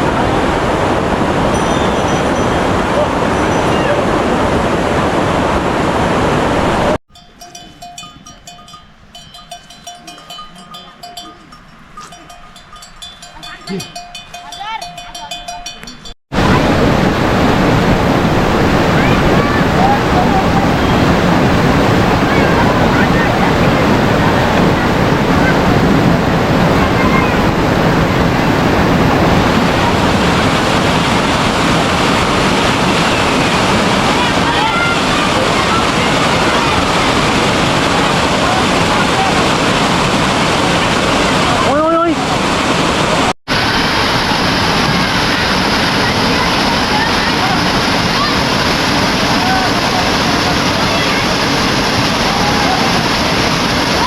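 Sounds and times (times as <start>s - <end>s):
loud rushing noise: 0.0s - 7.0s, 16.3s - 54.0s
livestock bells clanking: 1.5s - 2.6s, 7.1s - 16.2s.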